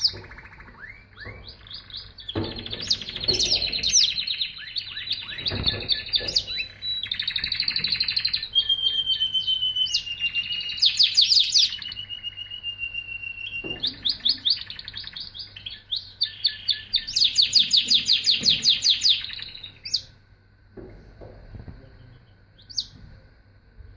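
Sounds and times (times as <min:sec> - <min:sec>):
canary singing: 0:00.0 - 0:20.2, 0:22.0 - 0:23.0.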